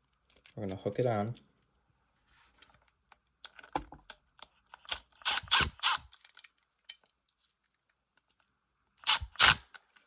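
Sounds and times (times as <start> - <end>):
impact driver buzzing: 5.2 - 6.0, 9.0 - 9.6.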